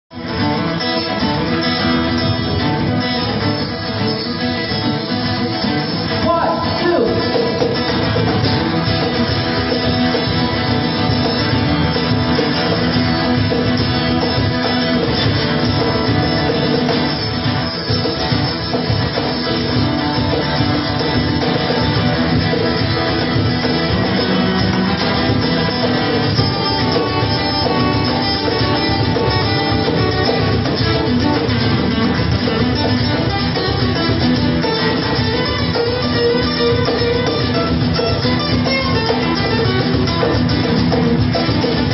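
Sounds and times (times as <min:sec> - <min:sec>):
electric guitar: 0:00.1 - 0:41.9
live band playing: 0:00.1 - 0:41.9.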